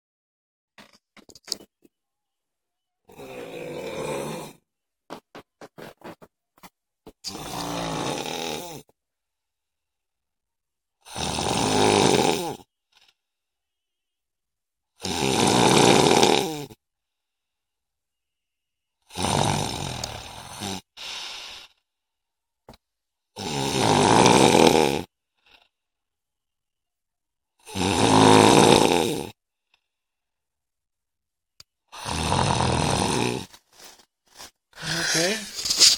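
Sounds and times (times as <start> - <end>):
woman snoring: 3.1 - 4.6, 7.3 - 8.9, 11.0 - 12.7, 15.0 - 16.8, 19.1 - 21.7, 23.4 - 25.1, 27.6 - 29.4, 31.9 - 33.6, 34.8 - 35.6.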